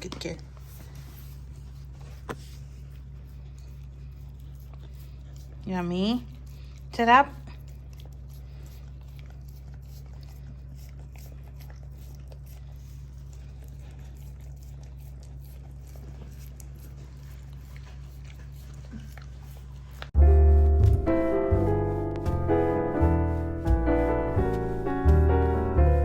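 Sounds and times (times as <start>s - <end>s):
dog chewing a treat: 0.0s - 20.2s
steady low hum: 0.0s - 26.0s
piano music: 20.2s - 26.0s.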